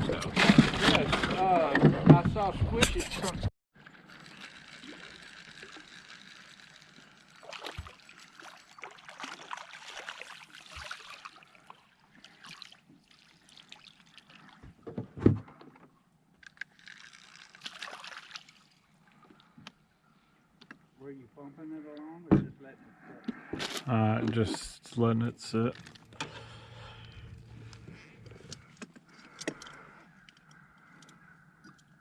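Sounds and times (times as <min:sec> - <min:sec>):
water trickling and sloshing: 0:03.8 - 0:20.2, 0:25.5 - 0:29.8.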